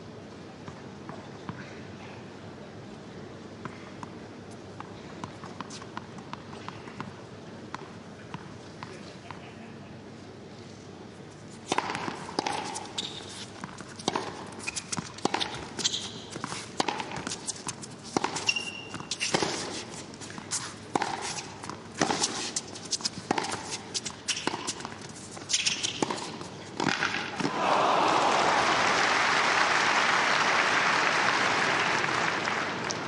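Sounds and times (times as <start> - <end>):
tennis ball hits and bounces: 11.7 - 13.0, 13.6 - 27.6
shoe squeaks: 12.6 - 26.6
crowd applause: 27.4 - 33.0.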